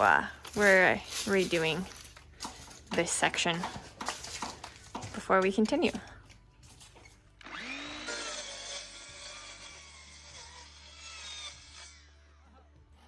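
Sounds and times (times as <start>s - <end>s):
power saw cutting wood: 7.4s - 12.8s.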